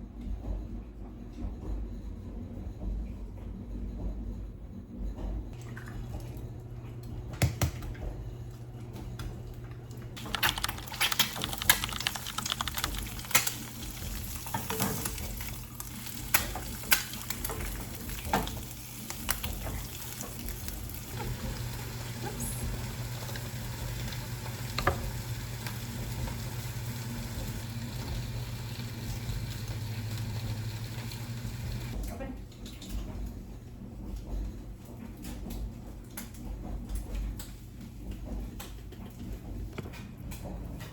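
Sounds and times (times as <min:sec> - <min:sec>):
food frying in a pan: 0:10.4 - 0:32.0.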